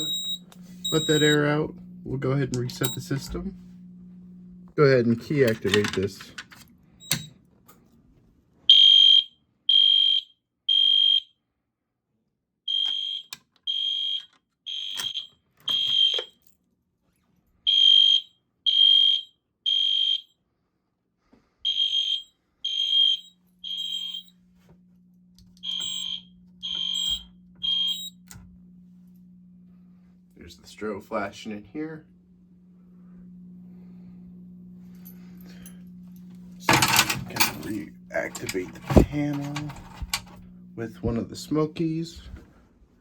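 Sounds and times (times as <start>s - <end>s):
fire alarm beeping: 0.0s - 3.7s, 7.0s - 7.4s, 8.7s - 11.4s, 12.7s - 16.4s, 17.7s - 20.4s, 21.6s - 24.5s, 25.4s - 29.2s, 33.0s - 41.6s.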